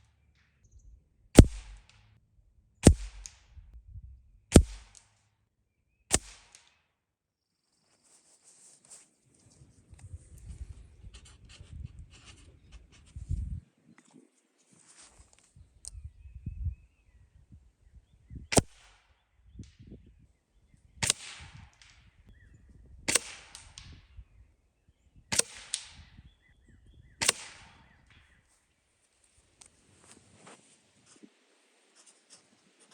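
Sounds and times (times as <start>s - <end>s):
air rifle shots: 1.4s - 1.9s, 2.8s - 3.4s, 4.5s - 5.1s, 6.1s - 6.7s, 18.5s - 18.9s, 23.1s - 23.8s, 25.3s - 25.9s, 27.2s - 27.8s.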